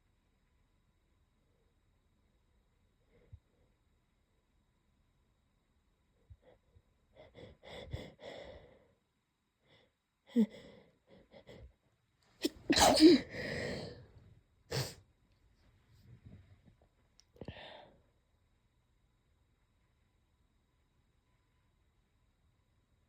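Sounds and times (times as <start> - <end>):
person sneezing: 12.4 - 13.8.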